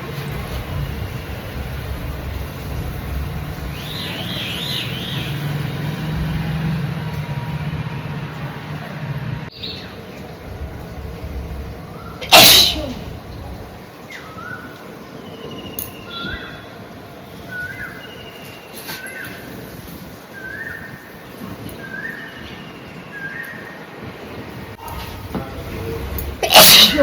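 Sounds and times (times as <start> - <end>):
low engine-like hum: 0.0 - 14.0
person sneezing: 12.2 - 13.0, 26.4 - 27.0.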